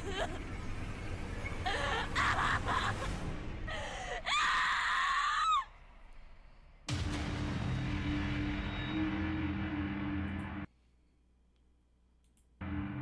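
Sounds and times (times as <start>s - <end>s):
long high scream: 4.2s - 5.7s.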